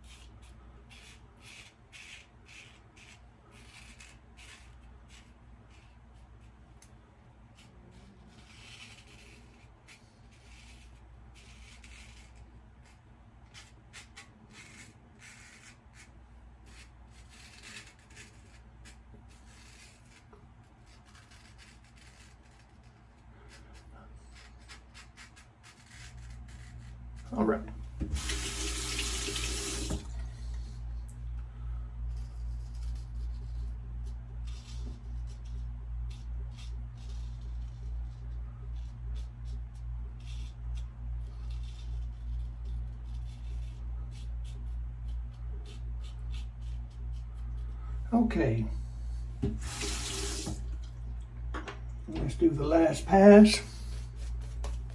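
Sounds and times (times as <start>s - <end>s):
razor scraping stubble: 0.0s - 6.5s, 7.5s - 30.2s, 32.1s - 47.8s
low background hum: 0.0s - 54.9s.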